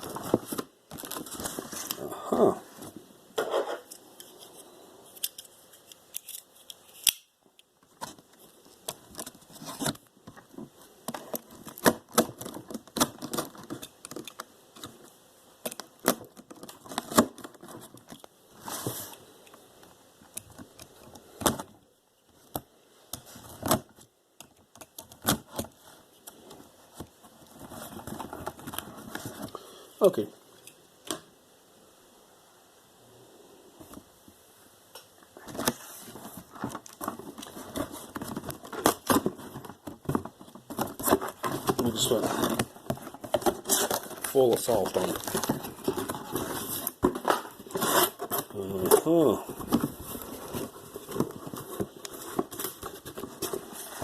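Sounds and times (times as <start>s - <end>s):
cardboard box being handled: 35.5s - 54.0s.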